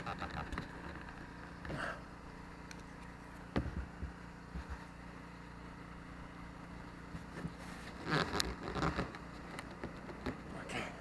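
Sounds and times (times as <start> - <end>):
steady low hum: 0.0 - 11.0
scraping rustle: 7.1 - 10.8.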